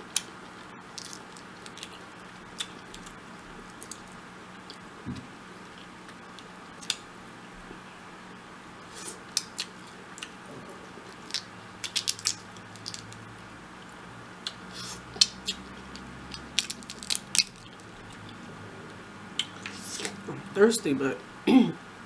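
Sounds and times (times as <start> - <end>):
crab shell cracking: 1.0 - 4.1, 11.1 - 13.2, 15.2 - 18.4
wet chewing sounds: 14.4 - 18.4.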